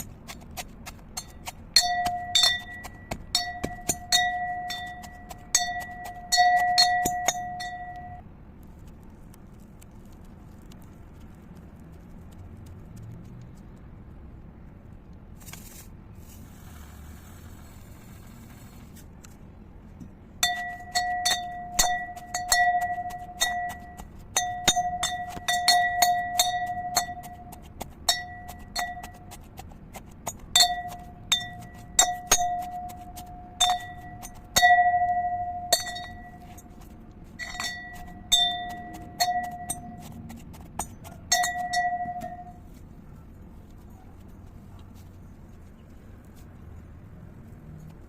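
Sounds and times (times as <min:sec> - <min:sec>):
glass being tapped: 0:01.2 - 0:08.2, 0:20.4 - 0:29.4, 0:30.3 - 0:36.8, 0:37.4 - 0:40.2, 0:40.8 - 0:42.6.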